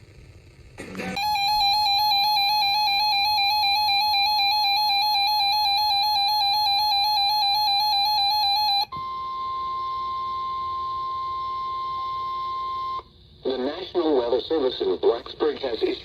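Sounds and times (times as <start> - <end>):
electronic two-tone alarm: 1.1 - 13.1.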